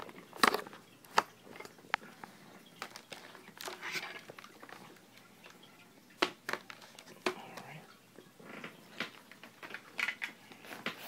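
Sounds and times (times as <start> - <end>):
rustling: 0.0 - 5.7.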